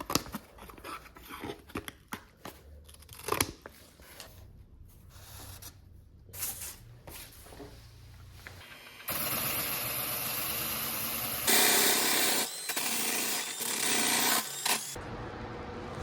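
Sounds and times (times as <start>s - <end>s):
power sander grinding: 8.7s - 15.0s.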